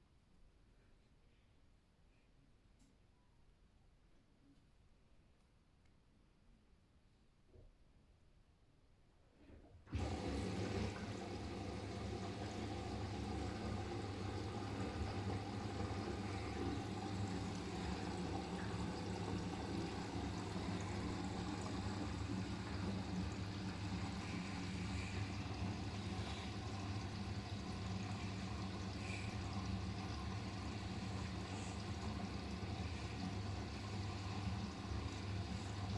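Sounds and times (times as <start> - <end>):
washing machine hum: 9.7 - 35.9
water pouring into drum: 9.9 - 35.9.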